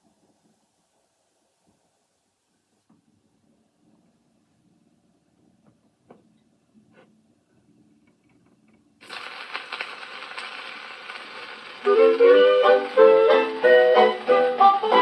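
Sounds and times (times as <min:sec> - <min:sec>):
record surface hiss: 0:00.0 - 0:15.0
instrumental song introduction: 0:11.9 - 0:15.0.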